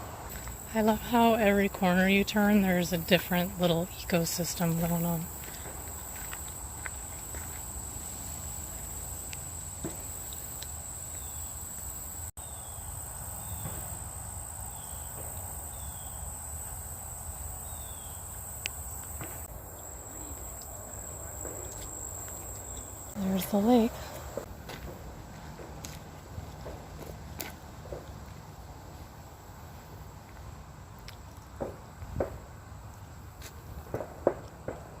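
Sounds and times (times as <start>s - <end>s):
insects trilling: 0.3s - 24.5s.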